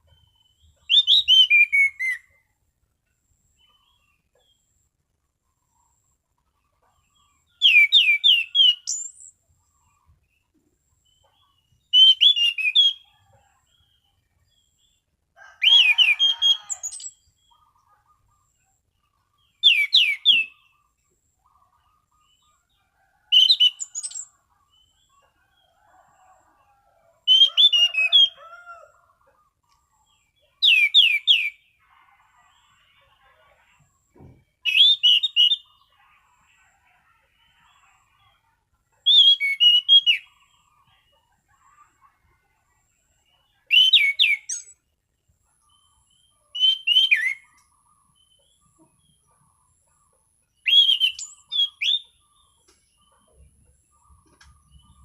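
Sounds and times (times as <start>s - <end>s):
thrush singing whistled phrases: 0.9s - 2.4s, 7.6s - 9.2s, 11.9s - 13.1s, 19.6s - 20.6s, 34.6s - 35.6s, 39.1s - 40.3s, 46.6s - 47.5s, 50.6s - 52.1s.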